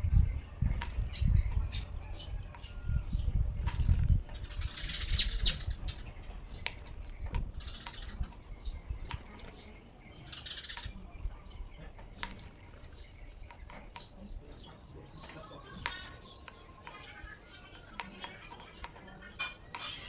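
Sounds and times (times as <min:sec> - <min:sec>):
bird wings fluttering: 0:00.7 - 0:01.2, 0:03.5 - 0:08.0, 0:09.0 - 0:09.8, 0:12.0 - 0:13.4.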